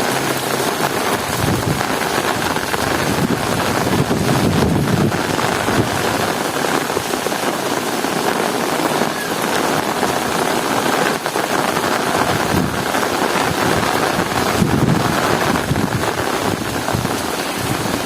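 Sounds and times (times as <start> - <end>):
heavy rain falling: 0.0 - 18.0.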